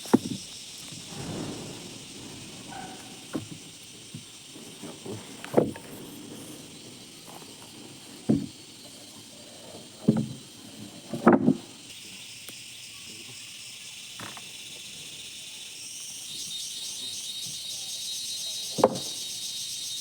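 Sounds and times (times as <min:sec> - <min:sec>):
faint high insect-like hum: 0:00.0 - 0:20.0
short knocks: 0:00.1 - 0:08.7.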